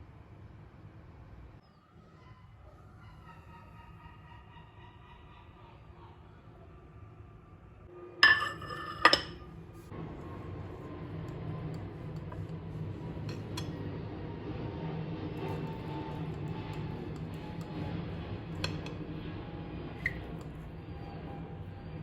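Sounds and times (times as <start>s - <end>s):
kitchenware clinking together: 8.2s - 9.5s.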